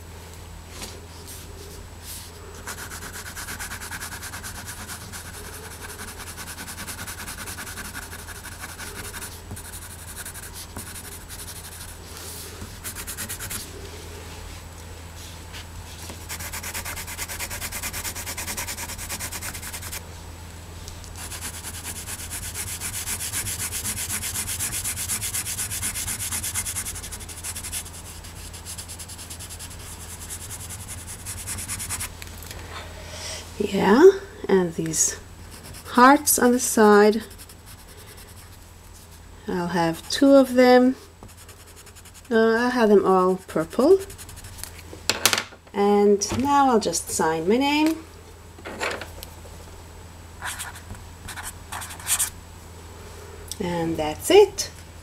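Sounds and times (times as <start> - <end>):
pencil crayon rubbing on paper: 2.6 - 12.0, 12.8 - 13.7, 16.2 - 20.0, 21.2 - 32.1, 35.5 - 36.4, 37.2 - 39.1, 41.3 - 42.4, 43.4 - 44.6.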